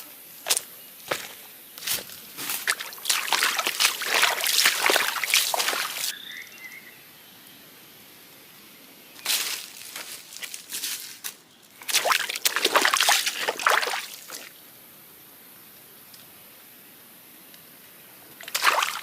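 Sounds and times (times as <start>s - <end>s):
water sloshing and crackling: 1.9s - 6.1s, 11.8s - 14.5s, 18.4s - 19.0s.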